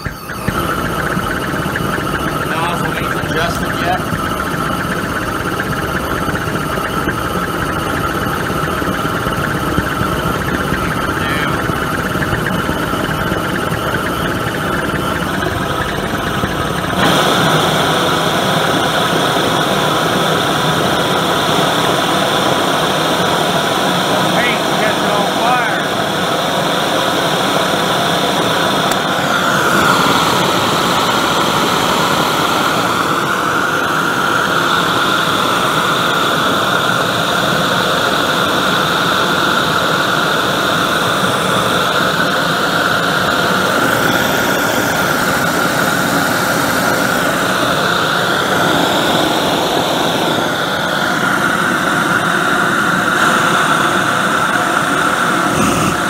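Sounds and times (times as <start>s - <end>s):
whistling tone: 0.0s - 16.9s
forge burner rushing gas jet: 0.0s - 56.0s.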